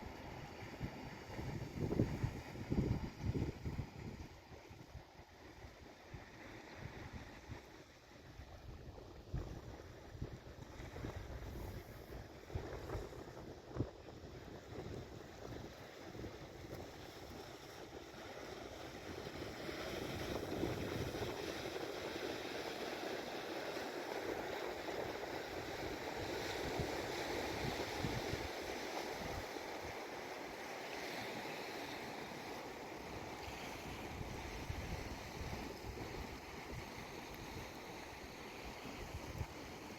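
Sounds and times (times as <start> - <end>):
wind buffeting microphone: 1.2 - 4.4, 20.0 - 21.6.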